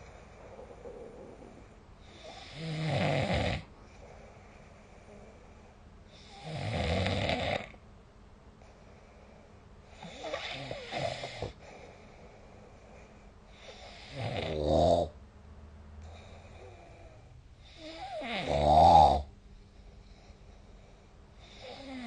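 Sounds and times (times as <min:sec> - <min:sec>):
person snoring: 0:00.0 - 0:03.7, 0:06.2 - 0:07.8, 0:10.0 - 0:11.6, 0:13.6 - 0:15.1, 0:16.2 - 0:19.3, 0:21.4 - 0:22.0.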